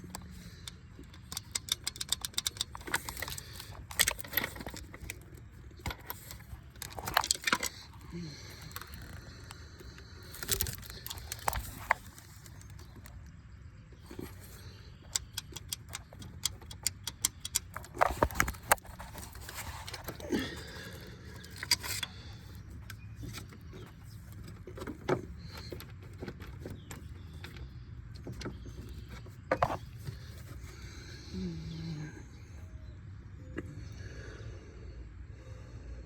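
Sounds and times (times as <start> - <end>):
metal parts clicking and clinking: 0.0 - 9.2, 15.0 - 22.6
low steady hum: 0.0 - 36.0.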